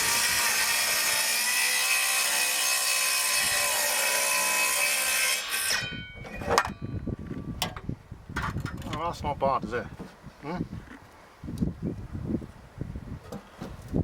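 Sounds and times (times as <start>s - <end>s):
circular saw cutting wood: 0.0s - 5.9s.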